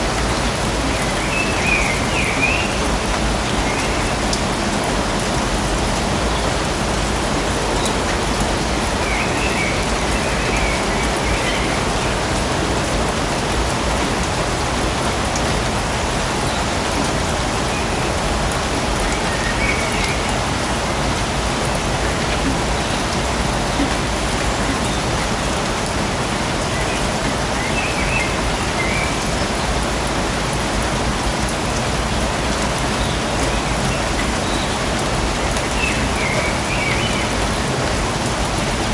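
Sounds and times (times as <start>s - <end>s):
rain on leaves: 0.0s - 38.9s.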